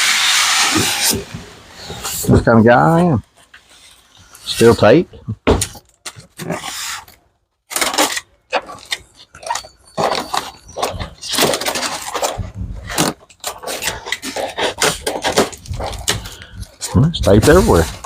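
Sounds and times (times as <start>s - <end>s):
cardboard and tape ripping: 0.0s - 2.3s, 6.1s - 10.5s, 11.2s - 16.4s.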